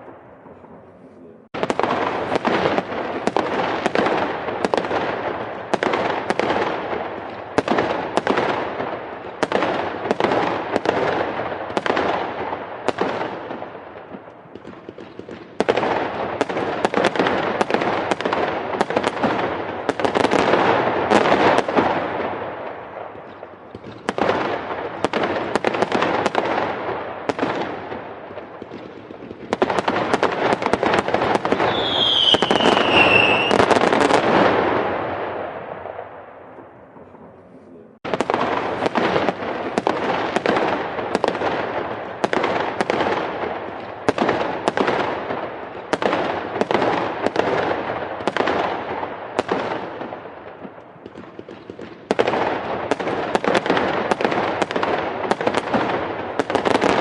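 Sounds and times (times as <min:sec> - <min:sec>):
fireworks bangs and crackles: 0:00.0 - 0:57.0
whistling firework: 0:23.0 - 0:36.9.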